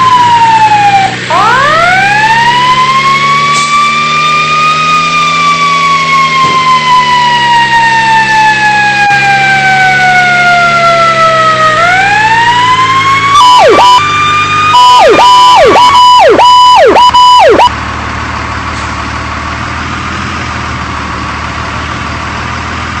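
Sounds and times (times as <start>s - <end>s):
fire engine siren: 0.0s - 17.8s.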